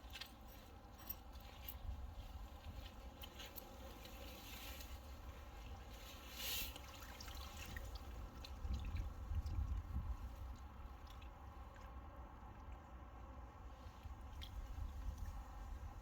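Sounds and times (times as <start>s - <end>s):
water dripping and trickling: 3.2s - 13.0s.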